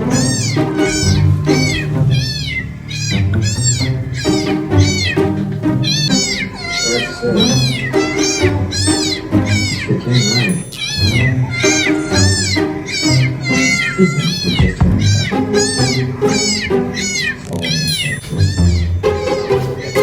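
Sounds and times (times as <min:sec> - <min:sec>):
cat meows: 0:00.0 - 0:05.2, 0:05.9 - 0:20.0
music with steady bass line: 0:14.6 - 0:16.0.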